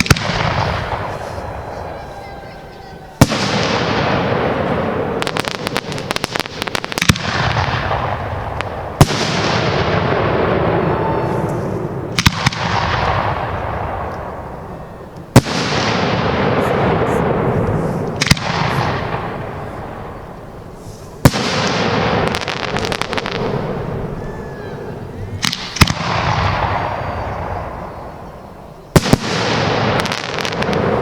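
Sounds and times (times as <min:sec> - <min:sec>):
fireworks bursting: 0:00.0 - 0:31.0
hiss and crackle: 0:16.6 - 0:23.9.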